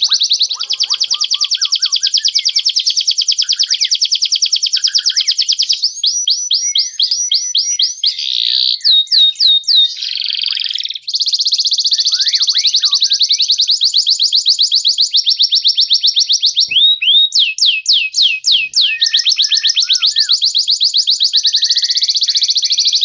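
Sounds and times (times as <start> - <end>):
lower-pitched chirps: 0.0 - 13.0
canary singing: 0.0 - 23.0.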